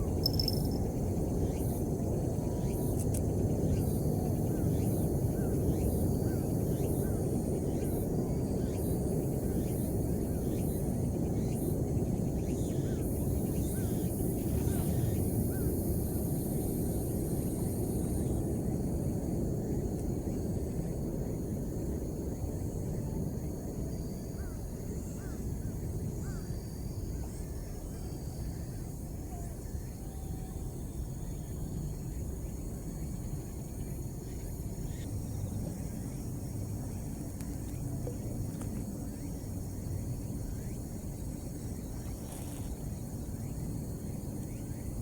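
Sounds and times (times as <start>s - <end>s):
faint high-pitched steady tones: 0.0s - 2.7s
constant low rumble: 17.5s - 45.0s.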